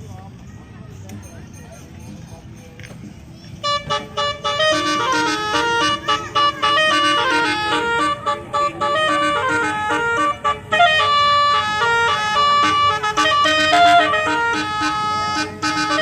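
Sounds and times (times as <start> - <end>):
multi-tone horn playing a tune: 3.6 - 16.0.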